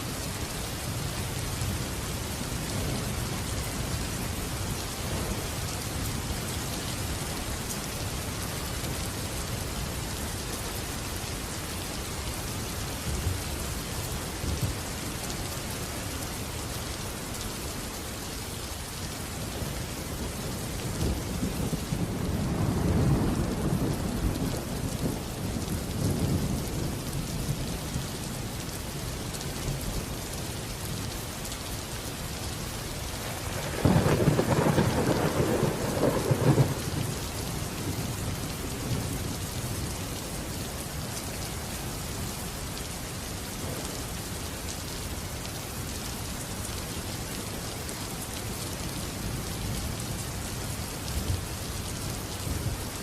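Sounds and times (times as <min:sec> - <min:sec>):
heavy rain: 0:00.0 - 0:53.0
rolling thunder: 0:33.2 - 0:37.2
sharp thunderclap: 0:33.4 - 0:36.8.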